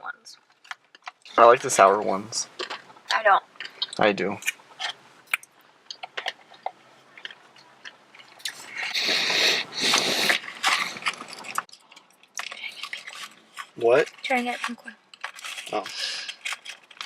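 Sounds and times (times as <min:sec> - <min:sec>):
candy being crunched: 0:09.8 - 0:17.0.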